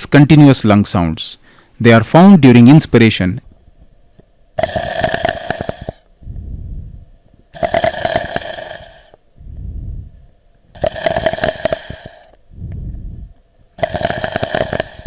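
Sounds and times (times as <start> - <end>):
breathing with crackles: 1.4 - 1.8, 4.6 - 15.0.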